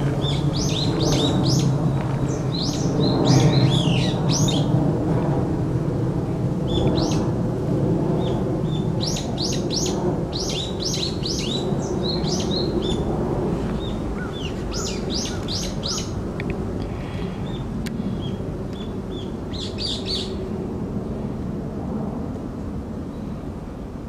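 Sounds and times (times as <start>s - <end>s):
birds calling shrill rising notes: 0.0s - 4.8s, 6.6s - 7.3s, 8.2s - 13.1s, 13.8s - 16.2s, 17.4s - 20.4s.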